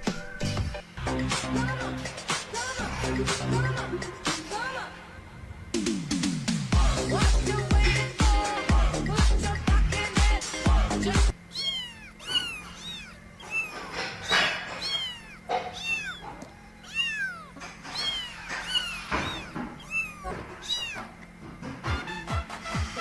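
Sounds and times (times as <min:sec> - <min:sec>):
kitten meowing: 0:11.5 - 0:21.2.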